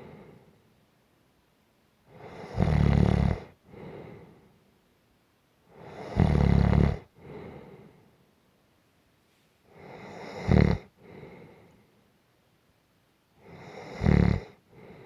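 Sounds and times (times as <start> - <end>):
soft breath: 0.0 - 0.7, 3.6 - 4.7, 7.1 - 8.3, 9.2 - 12.1, 13.4 - 15.0
low snoring: 2.1 - 4.0, 5.8 - 7.4, 9.8 - 11.4, 13.4 - 15.0.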